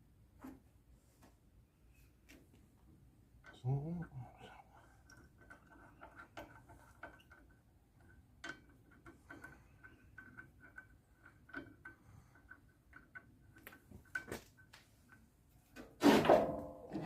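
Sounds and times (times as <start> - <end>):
small clicks and ticks: 4.8 - 15.3.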